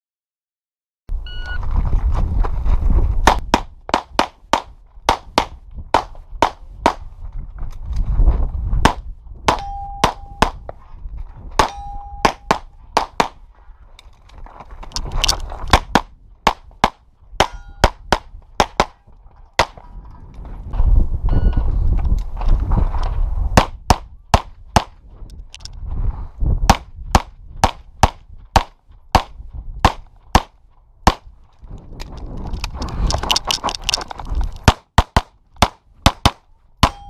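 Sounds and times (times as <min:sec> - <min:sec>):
short beep: 0:01.2 - 0:01.7, 0:09.6 - 0:10.4, 0:11.7 - 0:12.5, 0:21.3 - 0:21.7
pistol shots: 0:08.8 - 0:10.6, 0:15.7 - 0:19.0
steel targets ringing: 0:09.6 - 0:10.4, 0:11.6 - 0:12.6, 0:17.4 - 0:17.9.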